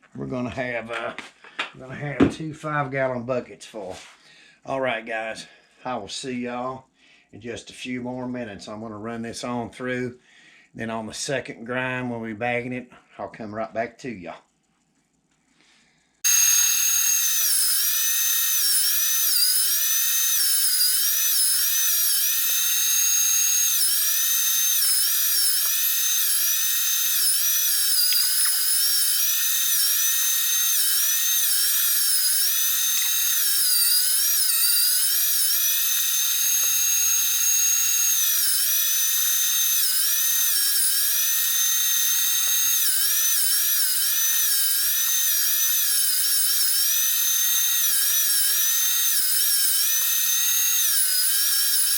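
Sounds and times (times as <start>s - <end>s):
electric meat grinder whining: 16.2s - 51.9s.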